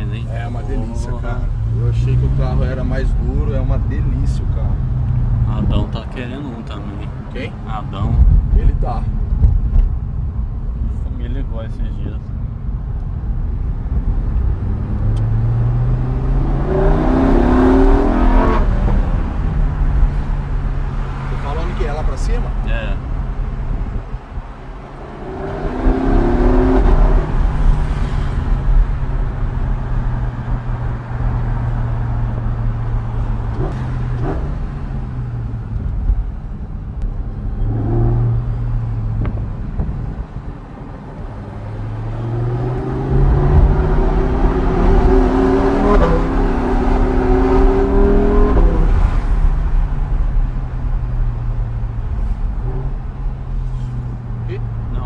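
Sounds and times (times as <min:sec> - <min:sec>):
car engine accelerating inside cabin: 0:13.8 - 0:21.5, 0:24.9 - 0:36.3, 0:37.0 - 0:40.2, 0:41.0 - 0:53.5.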